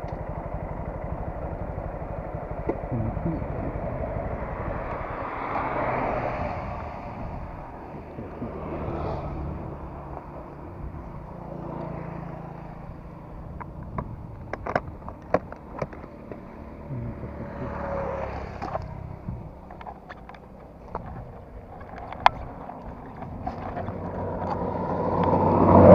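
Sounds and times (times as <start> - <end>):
small motorcycle engine running: 0.0 - 6.2, 7.1 - 25.9
wind noise on microphone: 2.9 - 8.4, 18.7 - 20.2, 20.8 - 25.9.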